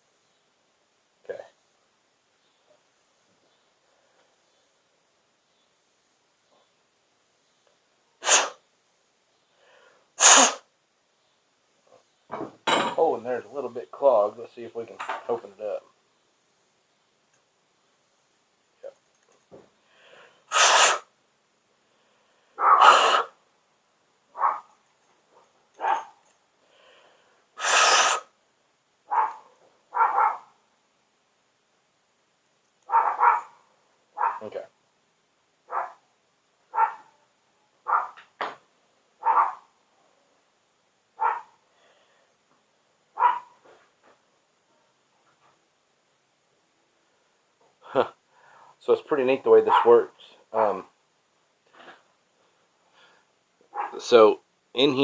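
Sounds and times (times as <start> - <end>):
hard puffs of breath blown: 8.2 - 8.6, 9.5 - 10.7, 19.8 - 21.1, 21.9 - 23.4, 26.6 - 28.4, 48.3 - 48.8, 52.8 - 53.3
dog barking: 22.6 - 23.3, 24.4 - 24.8, 25.8 - 26.2, 29.1 - 30.6, 32.9 - 33.6, 34.2 - 34.5, 35.7 - 36.0, 36.7 - 37.2, 37.8 - 38.2, 39.2 - 39.7, 41.2 - 41.6, 43.2 - 43.6, 49.7 - 50.0, 53.7 - 54.0.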